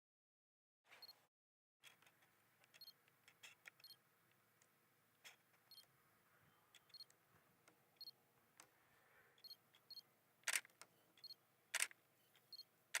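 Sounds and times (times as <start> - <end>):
camera focus beeps: 3.7 - 4.0, 6.8 - 7.1, 9.4 - 13.0
camera shutter clicks: 10.4 - 10.7, 11.7 - 12.0.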